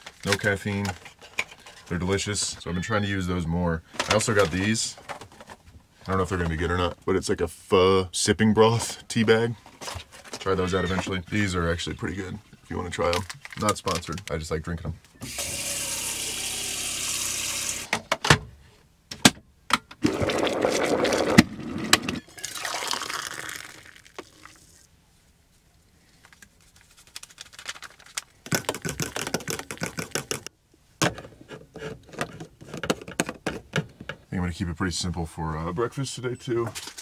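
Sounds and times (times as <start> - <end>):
water pouring into container: 20.0 - 24.8.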